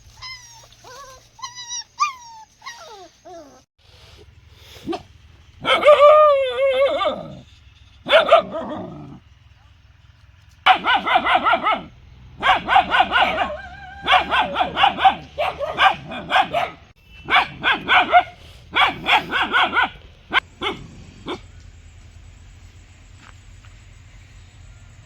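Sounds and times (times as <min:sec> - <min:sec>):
dog barking: 0:04.8 - 0:09.2, 0:10.7 - 0:21.5.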